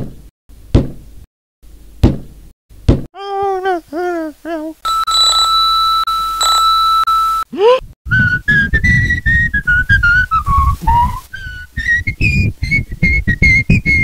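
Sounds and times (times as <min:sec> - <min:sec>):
high-pitched cartoon whistling: 0:08.1 - 0:14.0.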